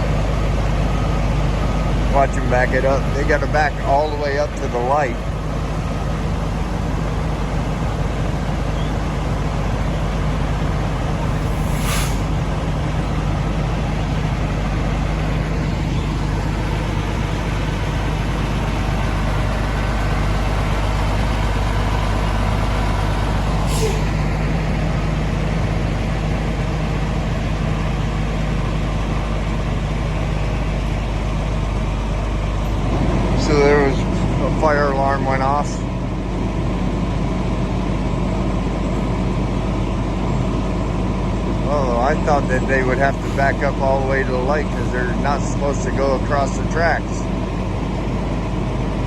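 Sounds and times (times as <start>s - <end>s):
diesel engine running: 0.0s - 49.0s
air brake hiss: 11.2s - 12.5s, 23.6s - 24.2s.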